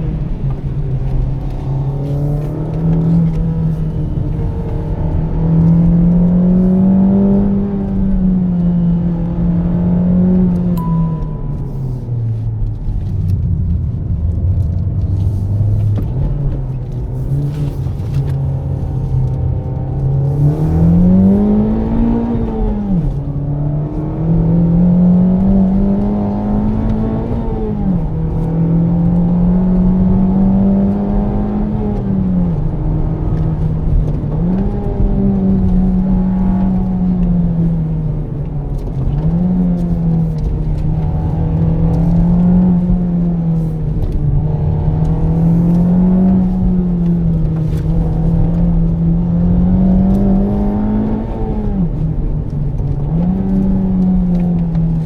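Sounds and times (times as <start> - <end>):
car engine accelerating from cabin: 0.0 - 55.0
engine throttle blips: 0.0 - 55.0.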